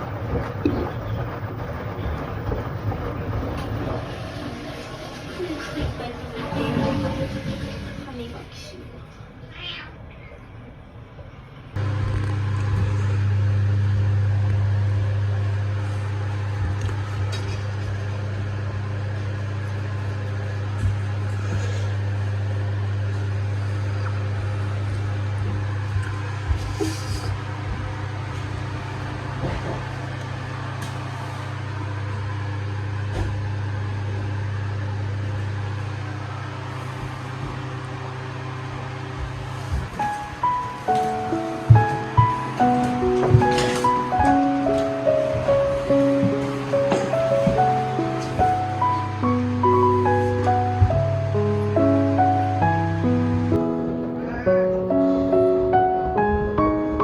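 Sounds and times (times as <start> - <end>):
washing machine motor hum: 0.0 - 57.0
washing machine knocks: 27.3 - 31.2, 39.0 - 51.3.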